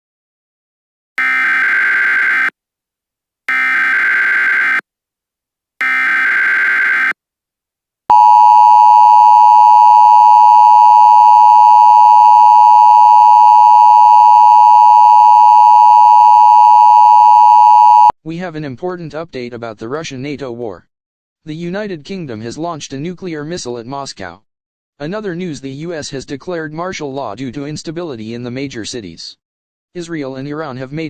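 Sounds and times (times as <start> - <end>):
two-tone attention signal: 8.1 - 18.1.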